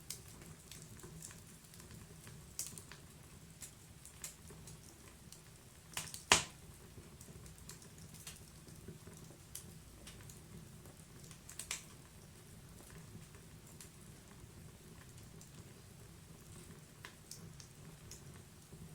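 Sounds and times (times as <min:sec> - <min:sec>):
wood fire crackling and popping: 0:00.0 - 0:18.9
loud fire snap: 0:05.9 - 0:06.6.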